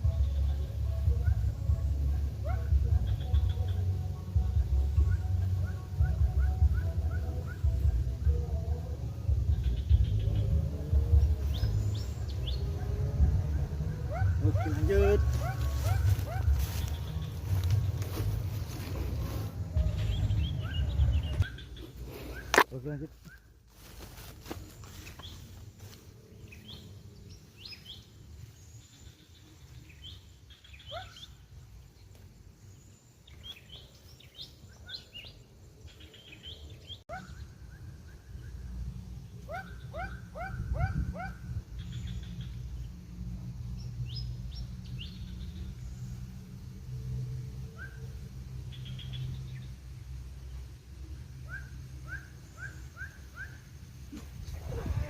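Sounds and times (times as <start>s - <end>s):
low steady rumble: 0.0s - 22.6s
birds chirping: 0.0s - 55.0s.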